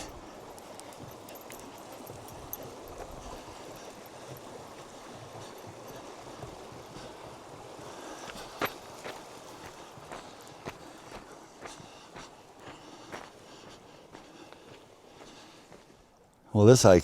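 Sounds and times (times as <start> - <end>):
faint ticks: 0.0 - 4.5
flowing stream water: 0.0 - 17.0.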